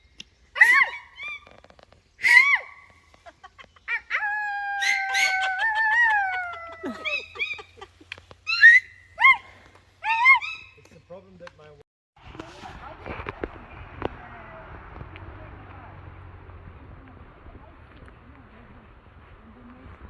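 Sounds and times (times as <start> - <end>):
dog yelping and whining: 0.6 - 1.5
dog howling: 4.1 - 7.3.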